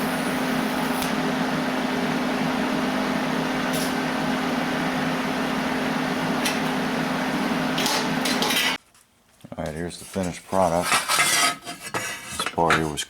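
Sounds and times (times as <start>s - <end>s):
steady machine hiss with hum: 0.0s - 8.8s.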